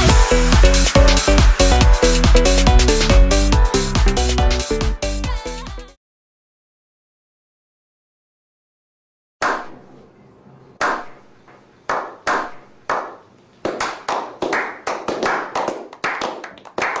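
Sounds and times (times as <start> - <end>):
hand claps echoing: 10.8 - 11.3, 11.9 - 17.0.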